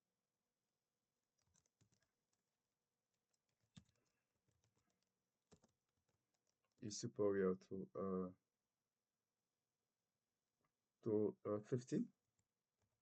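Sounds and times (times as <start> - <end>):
faint computer keyboard keystrokes: 1.4 - 2.4, 3.2 - 6.8.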